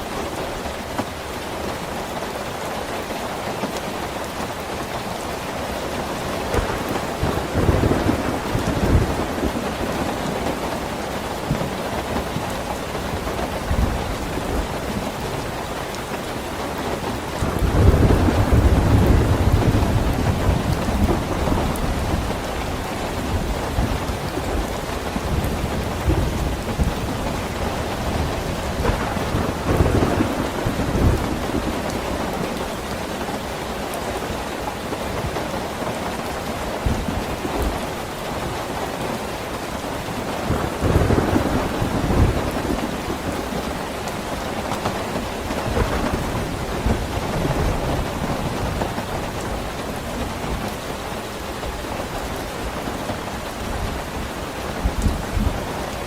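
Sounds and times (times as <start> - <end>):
steady rain: 0.0 - 56.0
low thunder rumbles: 6.0 - 33.1, 36.8 - 38.0, 40.2 - 50.8.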